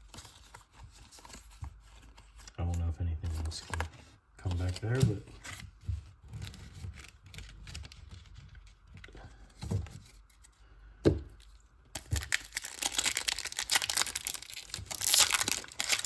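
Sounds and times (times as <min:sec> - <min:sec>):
foil wrapper tearing and crinkling: 0:12.0 - 0:16.0.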